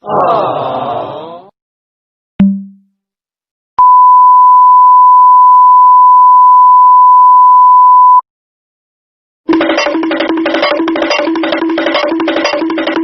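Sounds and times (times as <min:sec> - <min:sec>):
high-pitched censor beep: 0:03.8 - 0:08.2
music with a beat: 0:09.5 - 0:13.0.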